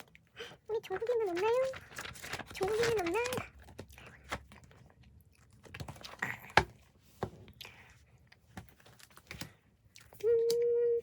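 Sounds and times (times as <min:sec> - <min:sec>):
plastic packaging crinkling: 0:00.8 - 0:04.9.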